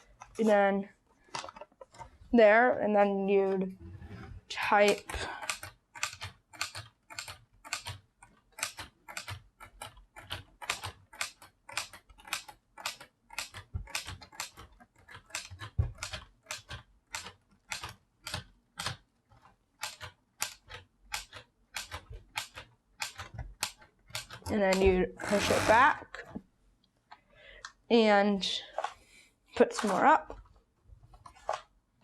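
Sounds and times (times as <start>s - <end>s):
plastic typewriter keys clicking: 4.7s - 26.2s.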